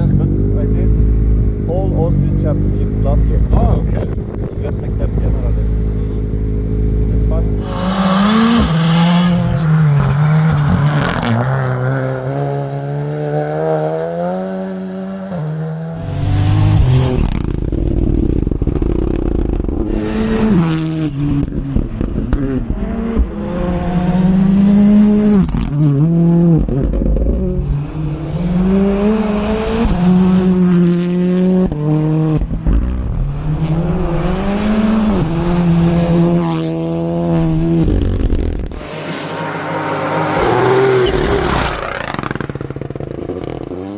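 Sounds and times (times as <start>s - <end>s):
car engine revving hard: 0.0s - 18.4s, 33.6s - 43.9s.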